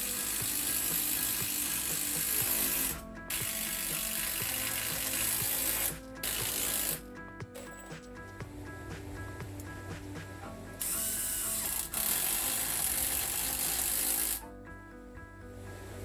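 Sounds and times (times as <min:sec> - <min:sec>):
impact driver driving screws: 0:00.0 - 0:07.0, 0:10.8 - 0:14.4.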